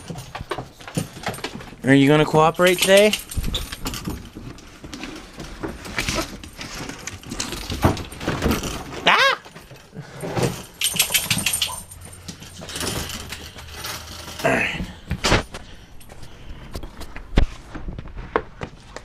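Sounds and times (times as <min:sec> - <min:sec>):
jingling: 0:00.0 - 0:04.8, 0:06.1 - 0:14.9
dogs moving and making noises: 0:00.0 - 0:19.0.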